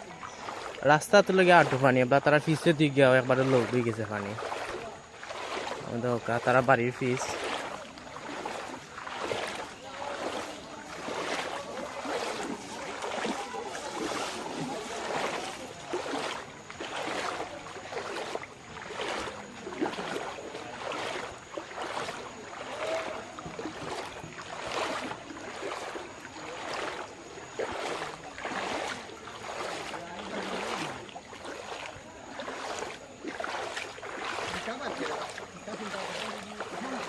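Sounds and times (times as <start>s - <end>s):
floodwater swishing in surges: 0.0s - 37.0s.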